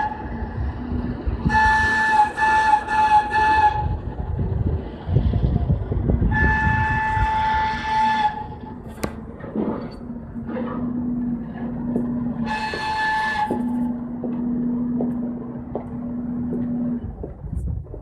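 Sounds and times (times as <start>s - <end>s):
train horn blasts: 0.0s - 4.1s, 6.2s - 8.9s, 12.4s - 14.8s
passing train rumble: 0.0s - 18.0s.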